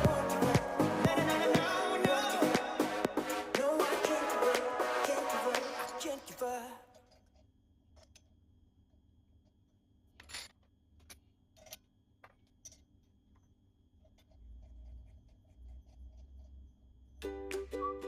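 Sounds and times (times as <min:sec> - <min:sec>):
metal parts clicking and clinking: 0:06.9 - 0:08.4, 0:10.1 - 0:17.2.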